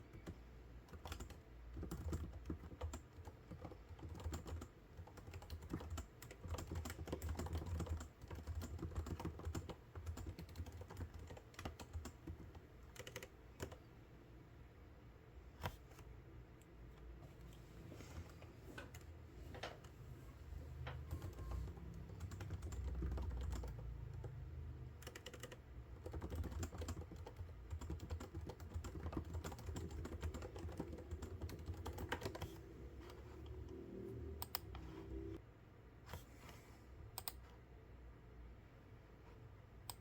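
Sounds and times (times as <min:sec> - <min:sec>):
typing on a keyboard: 0:00.1 - 0:13.9, 0:20.9 - 0:33.2.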